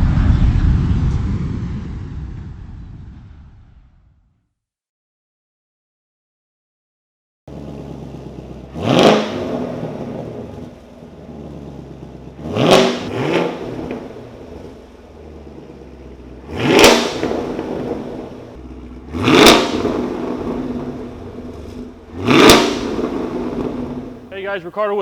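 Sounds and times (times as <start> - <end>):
car engine idling and revving: 7.5 - 24.8.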